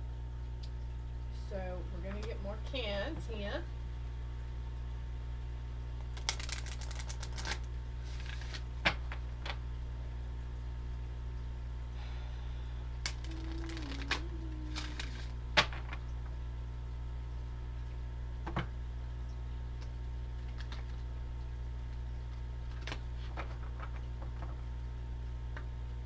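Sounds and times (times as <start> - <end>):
steady low hum: 0.0 - 26.0
cards clicking and tapping: 6.0 - 9.6.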